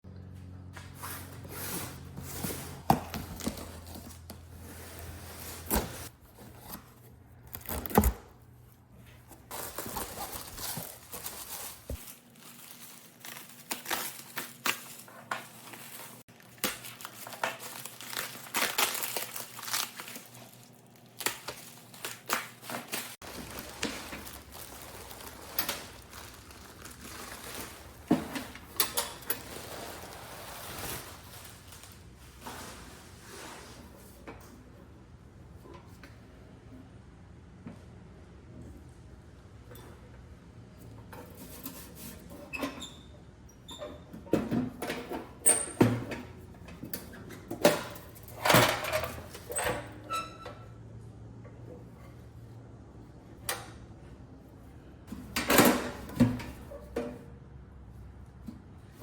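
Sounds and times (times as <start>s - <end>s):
crinkling handling noise: 0.7s - 34.2s.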